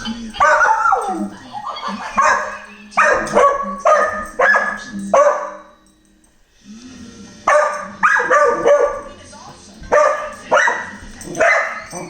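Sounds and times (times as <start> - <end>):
dog barking: 0.4 - 1.3, 2.0 - 5.8, 7.5 - 9.1, 9.9 - 12.0.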